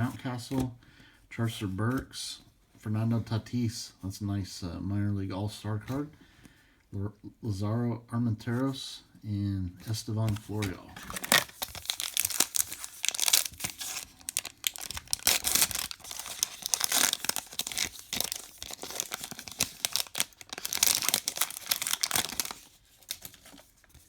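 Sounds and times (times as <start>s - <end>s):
card pack wrapper tearing: 10.3s - 24.0s.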